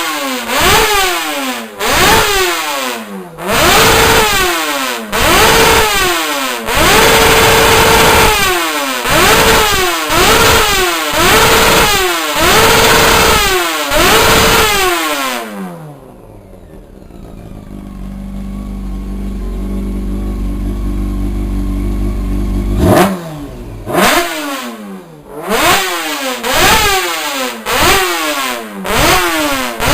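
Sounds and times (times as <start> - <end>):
motorcycle engine revving: 0.0 - 29.9
motorcycle engine idling: 13.9 - 23.9.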